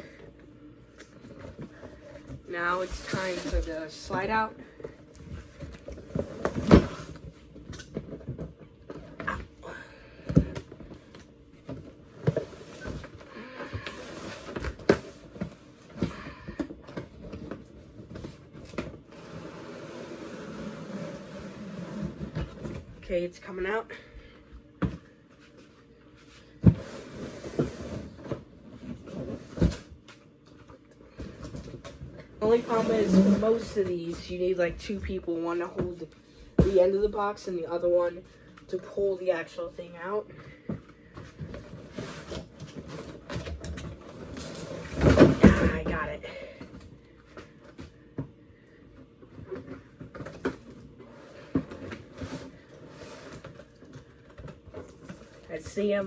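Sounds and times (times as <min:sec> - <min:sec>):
cardboard scraping and rustling: 0:05.3 - 0:09.3, 0:11.6 - 0:23.0, 0:26.3 - 0:30.0, 0:31.2 - 0:35.0, 0:41.2 - 0:46.2, 0:49.3 - 0:56.0.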